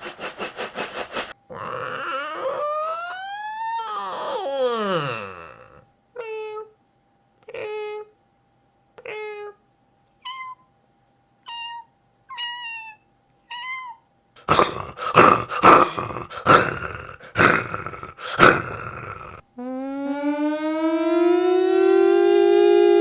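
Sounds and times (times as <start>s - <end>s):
person imitating tiger roars: 1.5s - 5.8s, 14.4s - 19.4s
person imitating kitten mews: 1.5s - 6.7s, 11.5s - 20.0s.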